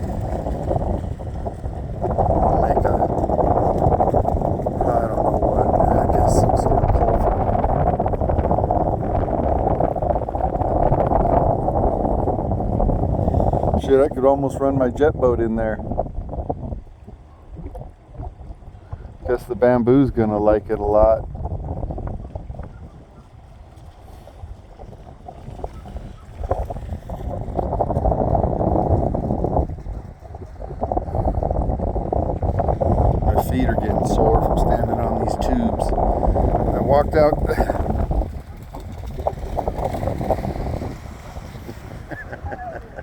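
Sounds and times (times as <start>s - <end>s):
floodwater rushing: 0.0s - 14.0s, 23.0s - 43.0s
wind rumbling on microphone: 0.0s - 43.0s.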